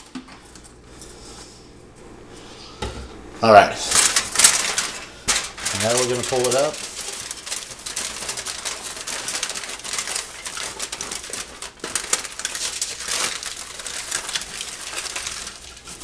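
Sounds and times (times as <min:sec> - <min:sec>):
aluminium foil crinkling: 0:03.8 - 0:16.0.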